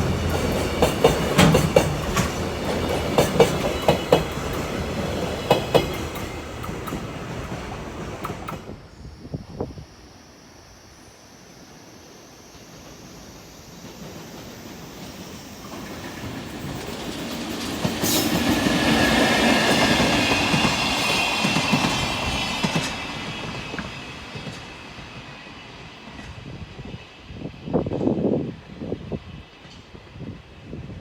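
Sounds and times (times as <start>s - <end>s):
wheels clacking over rail joints: 0.0s - 8.7s
freight train passing: 0.0s - 31.0s.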